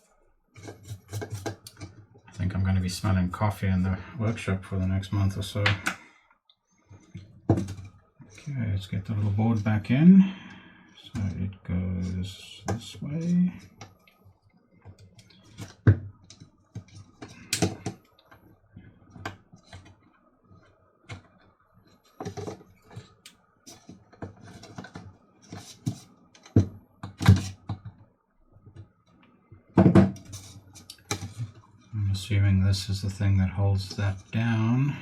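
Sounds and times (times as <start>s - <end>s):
plastic parts clicking and knocking: 0.5s - 2.0s, 6.9s - 8.5s, 14.8s - 18.5s, 19.1s - 31.9s.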